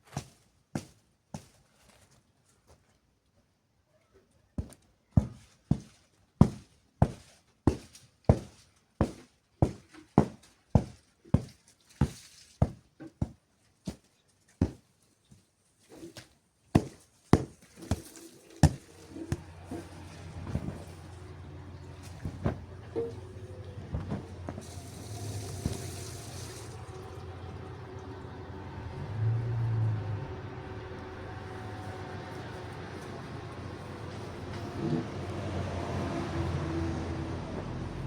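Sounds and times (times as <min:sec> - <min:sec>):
blanket being beaten: 0:16.8 - 0:21.2, 0:21.9 - 0:26.4
low steady hum: 0:18.8 - 0:35.5.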